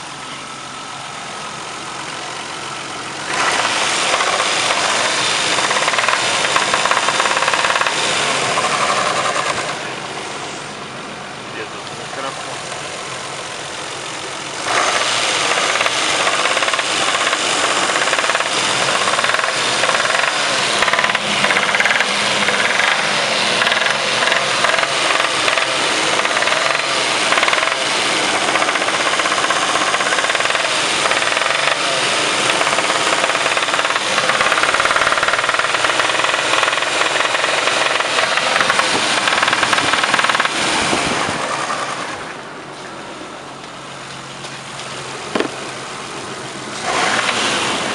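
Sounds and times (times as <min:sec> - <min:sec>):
car engine knocking: 0:00.0 - 0:10.2, 0:11.7 - 0:42.4, 0:43.6 - 0:47.4.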